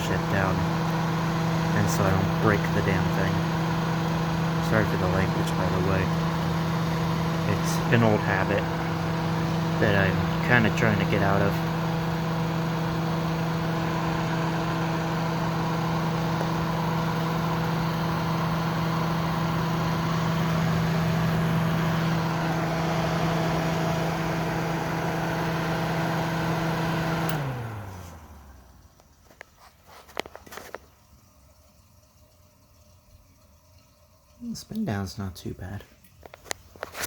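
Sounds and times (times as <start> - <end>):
fan noise: 0.0 - 28.6
dehumidifier motor hum: 0.0 - 37.0.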